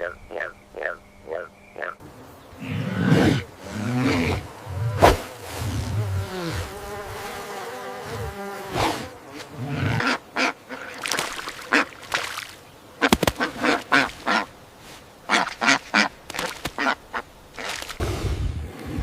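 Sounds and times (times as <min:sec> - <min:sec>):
ducks quacking: 0:09.7 - 0:12.2, 0:13.0 - 0:14.6, 0:15.3 - 0:17.8.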